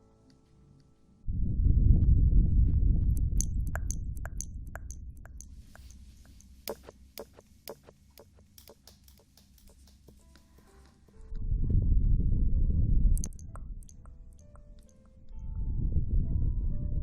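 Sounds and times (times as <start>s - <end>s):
deep muffled rumble: 1.3s - 5.2s, 11.3s - 13.7s
light clicks and taps: 3.2s - 11.3s.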